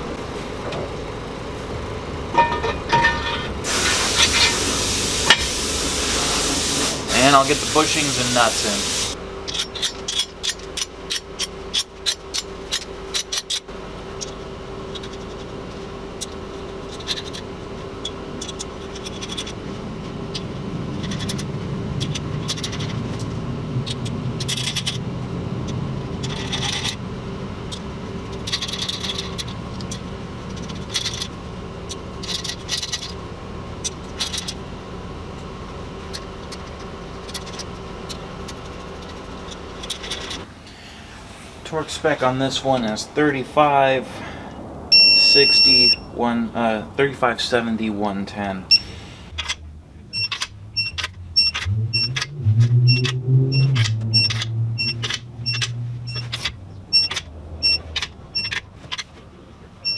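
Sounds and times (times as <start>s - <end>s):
steady shop hum: 0.0s - 59.9s
metal scraping: 1.5s - 13.6s, 48.7s - 59.2s
metal parts clinking: 2.3s - 4.6s, 9.4s - 15.5s, 16.2s - 20.4s, 21.0s - 25.0s, 26.2s - 27.0s, 27.7s - 33.2s, 33.8s - 34.6s, 36.1s - 40.5s, 48.7s - 59.2s.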